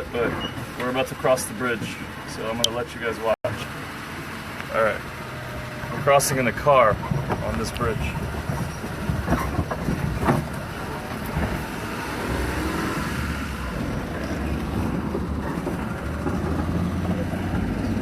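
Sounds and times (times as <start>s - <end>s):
car engine and road rumble: 0.0s - 18.0s.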